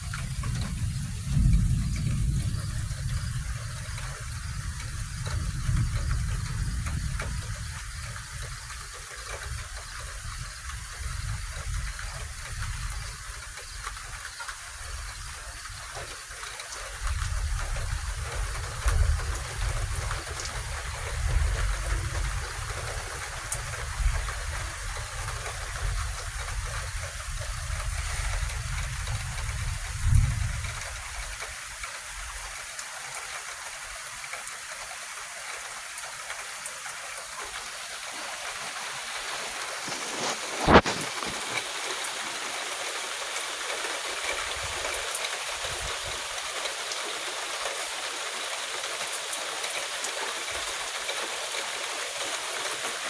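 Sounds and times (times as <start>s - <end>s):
heavy rain: 0.0s - 53.0s.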